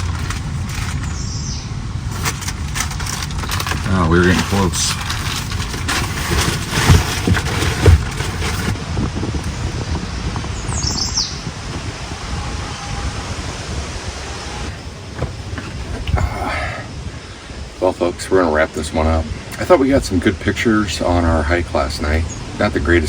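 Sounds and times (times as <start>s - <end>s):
wind noise on microphone: 0.0s - 18.2s
bird chirp: 1.0s - 1.8s, 10.5s - 11.5s
loud thumps: 2.1s - 8.9s.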